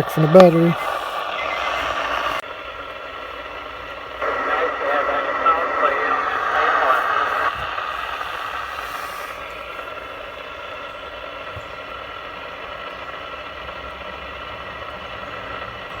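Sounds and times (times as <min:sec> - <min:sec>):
radio static: 0:00.0 - 0:02.4, 0:03.0 - 0:10.9.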